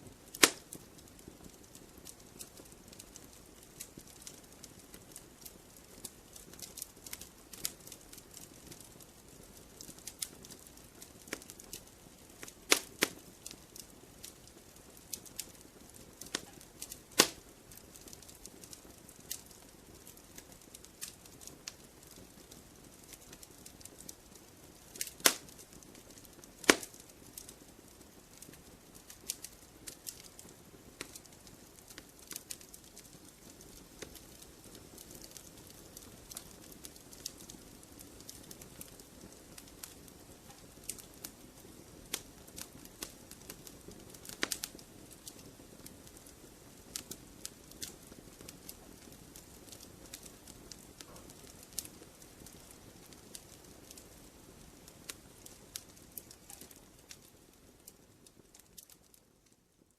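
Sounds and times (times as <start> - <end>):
campfire crackling: 0.0 - 59.9
wood popping sharply: 26.6 - 26.9.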